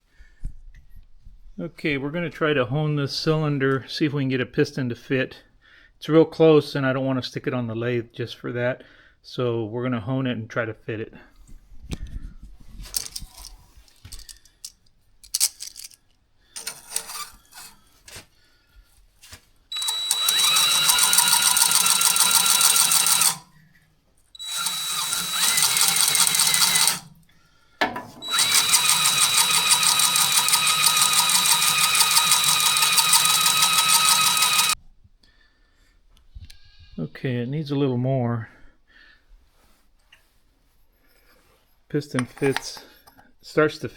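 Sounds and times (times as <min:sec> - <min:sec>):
light clicks and handling noises: 0:12.8 - 0:18.2
motor-driven hone grinding metal: 0:16.6 - 0:17.8, 0:19.8 - 0:23.4, 0:24.4 - 0:27.2, 0:28.2 - 0:34.8.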